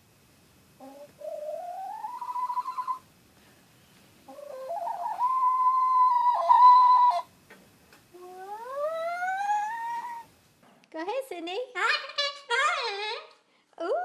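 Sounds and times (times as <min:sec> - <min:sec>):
animal howling: 0:04.4 - 0:07.3, 0:08.2 - 0:10.3.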